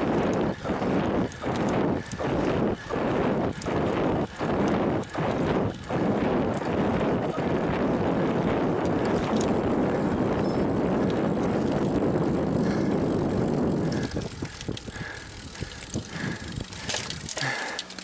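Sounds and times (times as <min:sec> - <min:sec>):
light clicks and ticks: 0:00.0 - 0:07.4, 0:08.7 - 0:09.7, 0:12.6 - 0:18.0
rushing wind: 0:00.0 - 0:17.8
bicycle tyre rumble: 0:00.0 - 0:18.0.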